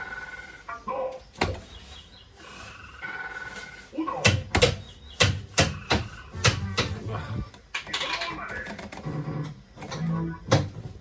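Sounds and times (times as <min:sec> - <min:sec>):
slot machine electronic tones: 0:00.0 - 0:00.7.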